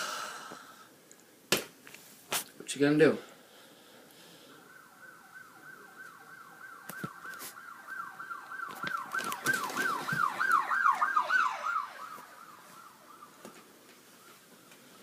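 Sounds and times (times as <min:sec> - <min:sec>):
police siren ringtone: 0:04.6 - 0:13.5.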